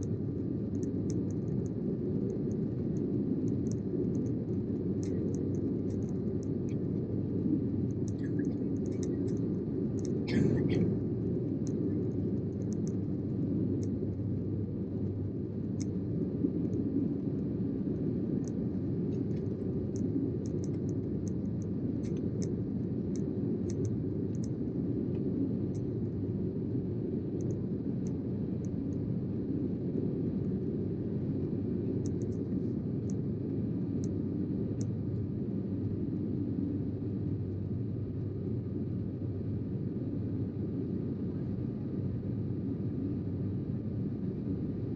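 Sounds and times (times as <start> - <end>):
faint small clicks and ticks: 0.0 - 30.6, 31.5 - 35.3
airliner cabin roar: 0.0 - 35.4.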